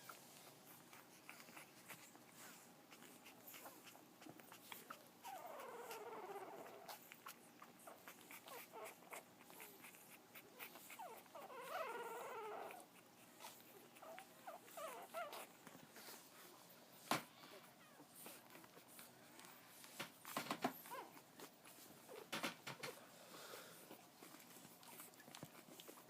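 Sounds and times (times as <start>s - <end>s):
puppy whimpering: 0.0s - 23.0s, 23.8s - 26.0s
puppy squeaks: 3.6s - 15.5s, 20.2s - 21.5s.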